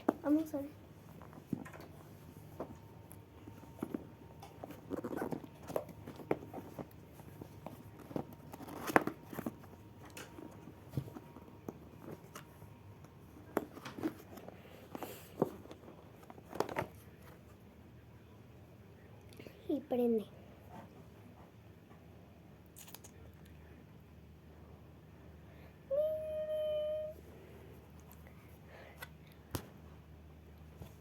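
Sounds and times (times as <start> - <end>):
rustling of handled objects: 0.0 - 17.6.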